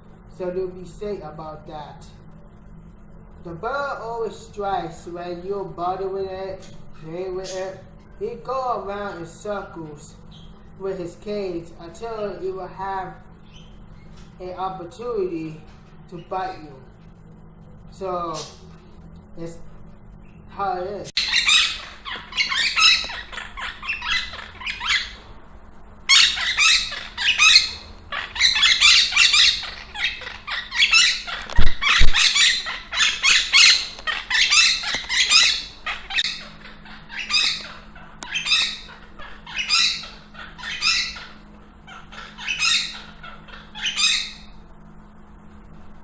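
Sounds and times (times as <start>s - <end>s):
pet bird squawking: 21.2s - 25.2s, 26.1s - 44.6s.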